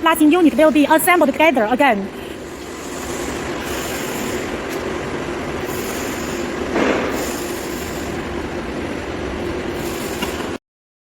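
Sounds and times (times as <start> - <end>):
steady machine hum: 0.0 - 10.6
machine rushing noise: 2.4 - 10.6.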